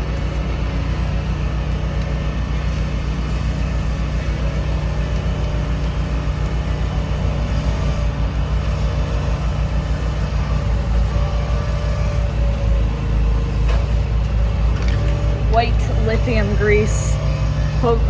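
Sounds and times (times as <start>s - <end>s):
aerosol can spraying: 0.0s - 0.4s, 2.7s - 14.2s
engine idling: 0.0s - 18.0s.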